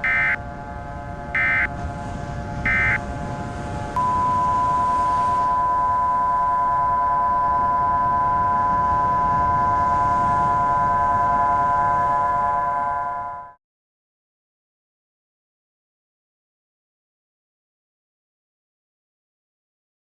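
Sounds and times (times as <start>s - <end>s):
data signal burst: 0.0s - 0.4s, 1.4s - 1.7s, 2.7s - 3.0s
steady test tone: 0.0s - 0.6s, 1.3s - 1.8s, 2.7s - 3.1s, 4.0s - 13.6s.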